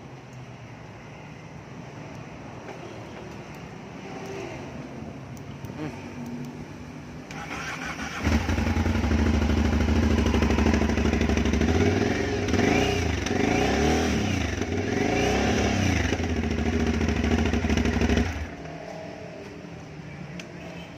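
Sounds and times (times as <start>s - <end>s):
motorcycle engine idling and revving: 7.3s - 19.5s.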